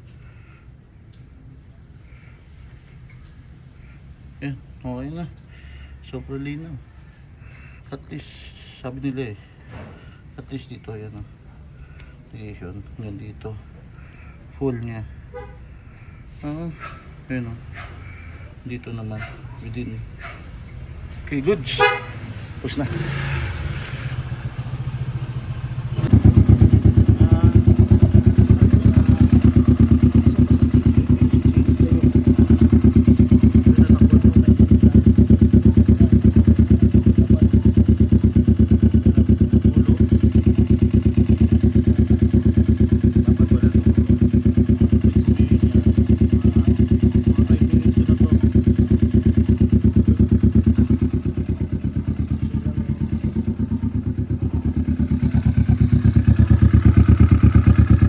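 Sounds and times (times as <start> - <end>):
motorcycle engine running: 21.8 - 58.0.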